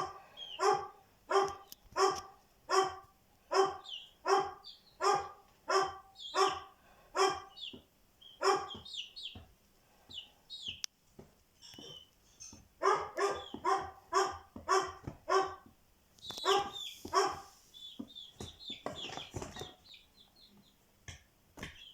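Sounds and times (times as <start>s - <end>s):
dog barking: 0.0s - 7.6s, 8.4s - 8.9s, 12.8s - 15.7s, 16.4s - 17.5s
small birds chirping: 0.0s - 21.9s.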